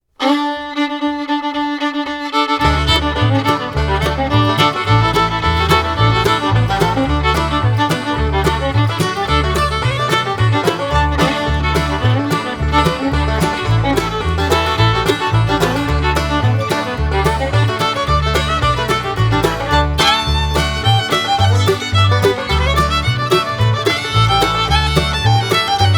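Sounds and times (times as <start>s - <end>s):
bluegrass fiddle music: 0.2s - 25.9s
steady bass beat: 2.6s - 25.9s.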